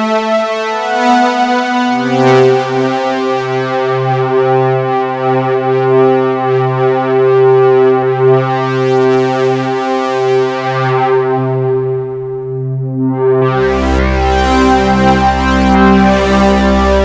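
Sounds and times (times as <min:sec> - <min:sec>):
synthesizer sustained chord: 0:10.7 - 0:17.0.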